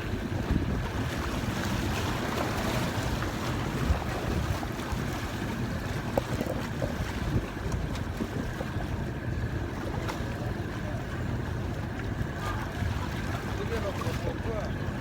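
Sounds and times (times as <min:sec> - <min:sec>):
wind buffeting microphone: 0:00.0 - 0:11.4
waves breaking against rocks: 0:00.0 - 0:15.0.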